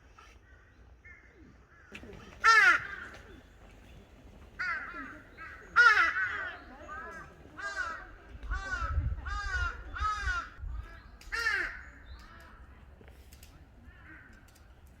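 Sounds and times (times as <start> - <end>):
crows cawing: 0.4 - 3.5, 4.5 - 12.6.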